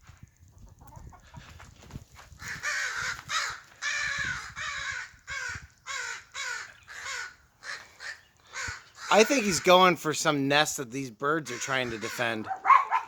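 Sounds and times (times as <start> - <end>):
corvids scolding calls: 2.4 - 10.3, 11.4 - 13.0.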